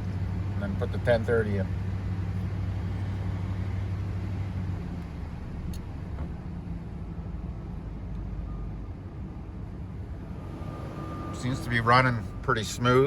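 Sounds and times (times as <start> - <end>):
engine running with falling revs: 9.9 - 13.0.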